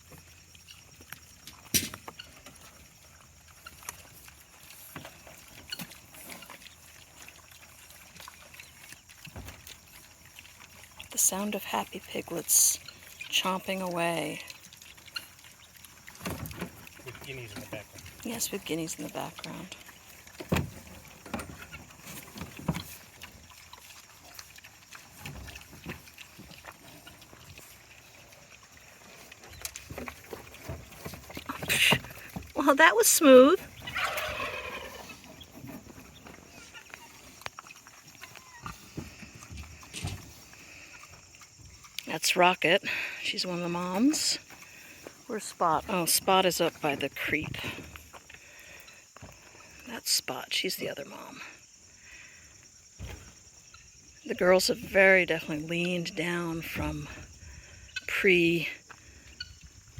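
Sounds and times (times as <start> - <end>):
piglets chomping feed: 0.0 - 48.8
guinea fowl calling: 59.2 - 59.7.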